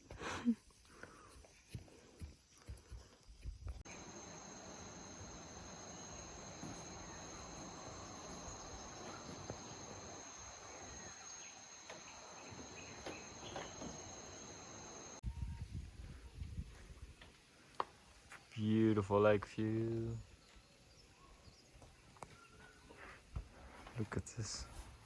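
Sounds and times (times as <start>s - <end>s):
faint insect chirps: 0.7s - 18.7s
insects trilling: 1.5s - 15.2s.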